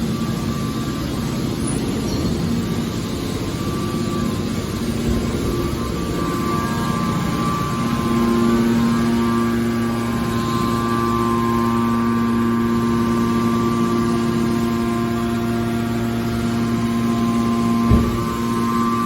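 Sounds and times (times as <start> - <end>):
hydraulic baler humming: 0.0 - 19.0
short knock: 17.9 - 18.4.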